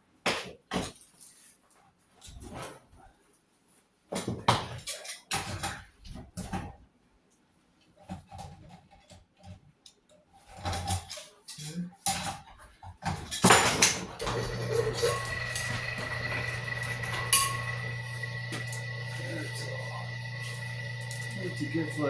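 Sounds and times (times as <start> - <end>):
wire stripping machine rasp: 13.5 - 22.0
machine motor hum and whine: 14.2 - 22.0.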